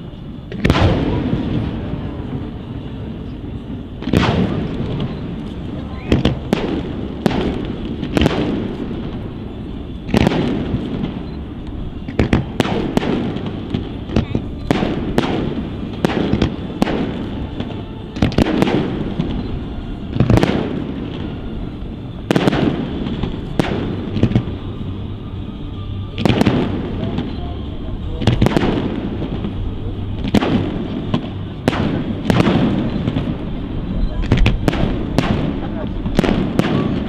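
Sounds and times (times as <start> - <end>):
low rumbling echo: 0.0 - 37.0
firework shells bursting: 3.5 - 37.0.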